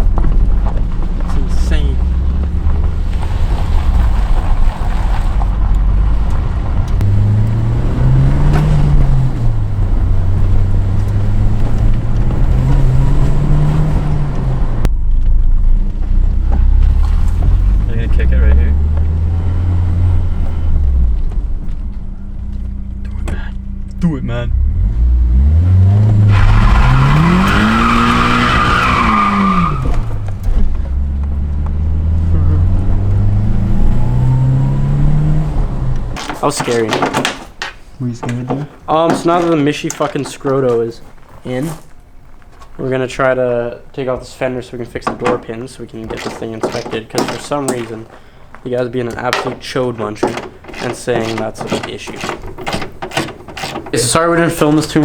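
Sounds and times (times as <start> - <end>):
tyres squealing: 0.0 - 14.9, 16.0 - 55.0
car engine revving: 0.0 - 36.3.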